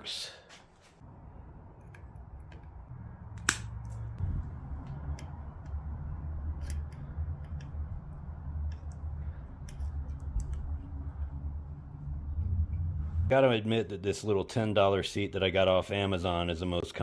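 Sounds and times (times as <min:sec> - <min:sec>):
low rumble: 0:01.0 - 0:13.4
handling clicks and ticks: 0:04.8 - 0:11.4.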